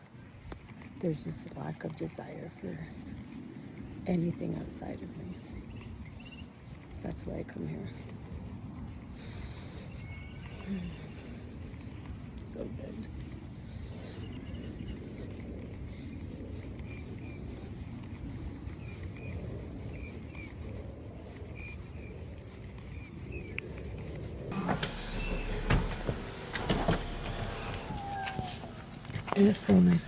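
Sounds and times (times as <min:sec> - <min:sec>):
small birds chirping: 0:03.8 - 0:30.0
low rumble: 0:22.4 - 0:30.0.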